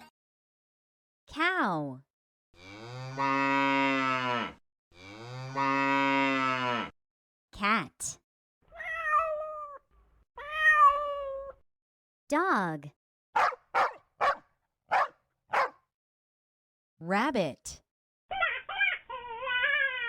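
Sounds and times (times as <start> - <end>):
cow mooing: 2.6 - 7.0
cat meowing: 8.7 - 9.8, 10.4 - 11.6.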